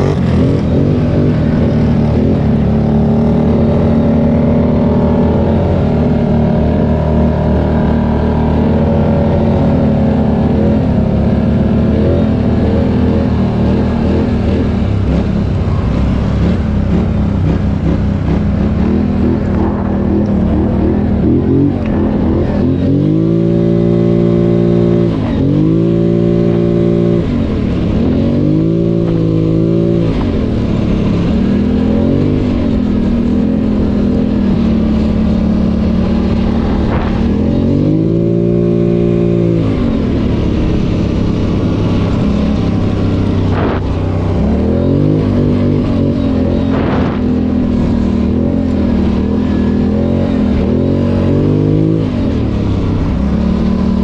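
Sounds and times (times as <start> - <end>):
atv engine revving: 0.0 - 54.0.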